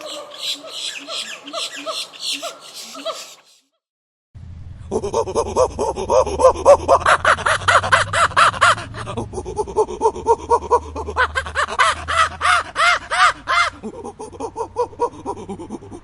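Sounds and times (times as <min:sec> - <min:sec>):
monkey hooting: 0:00.0 - 0:03.6, 0:04.9 - 0:16.0.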